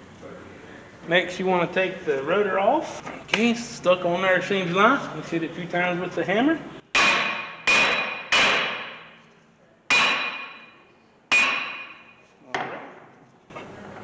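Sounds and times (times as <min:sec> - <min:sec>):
hammer striking metal rotor: 0:07.0 - 0:09.2, 0:09.9 - 0:12.2.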